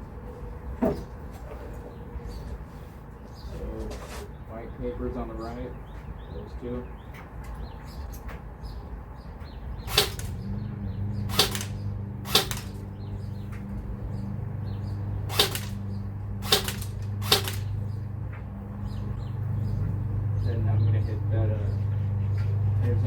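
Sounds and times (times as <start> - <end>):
steady low hum: 0.0 - 23.0
airsoft gun shots cracking: 9.9 - 10.5, 11.2 - 12.9, 15.2 - 17.8.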